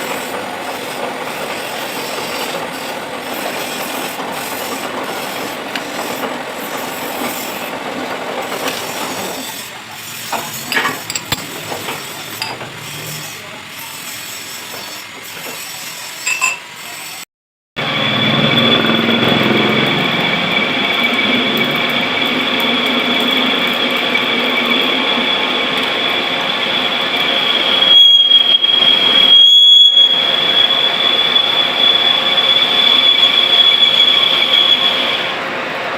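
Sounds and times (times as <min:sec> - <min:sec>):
lathe cutting metal: 0:00.0 - 0:17.2, 0:17.8 - 0:35.9
high-pitched tool squeal: 0:08.5 - 0:17.2, 0:17.8 - 0:35.4.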